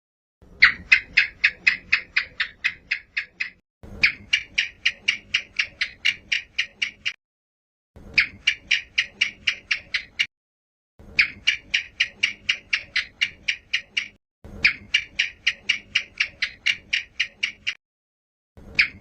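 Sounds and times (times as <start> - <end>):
gecko clicking chirps: 0.6 - 7.2, 8.2 - 10.3, 11.2 - 17.8, 18.8 - 19.0.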